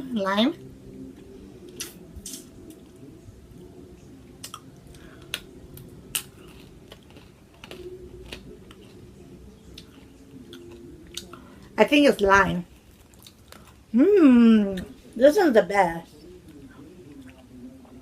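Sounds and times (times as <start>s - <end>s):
faint low hum: 0.0s - 18.0s
hard candy crunching in mouth: 6.1s - 9.0s.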